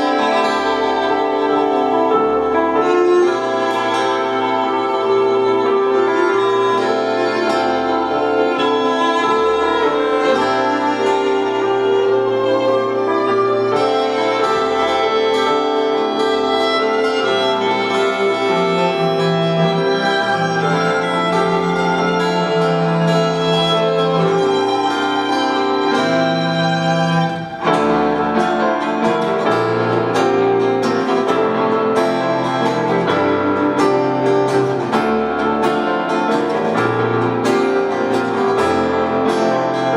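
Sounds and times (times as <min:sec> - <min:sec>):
live instrumental band music: 0:00.0 - 0:39.9
violin playing long held notes: 0:00.0 - 0:39.9.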